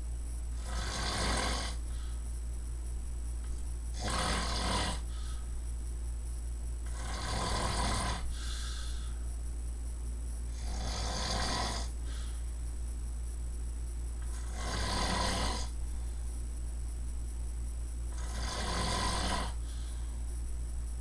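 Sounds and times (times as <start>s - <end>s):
steady low hum: 0.0s - 21.0s
person snoring: 0.6s - 1.8s, 3.9s - 5.4s, 6.8s - 9.2s, 10.5s - 12.4s, 14.2s - 15.8s, 18.1s - 20.0s.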